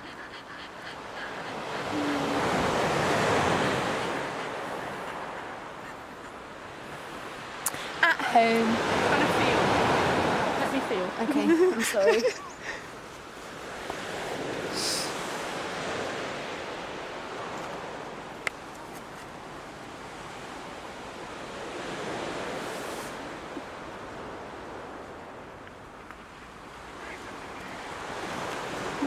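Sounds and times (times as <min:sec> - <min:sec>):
sea waves washing onto beach: 0:00.0 - 0:29.0.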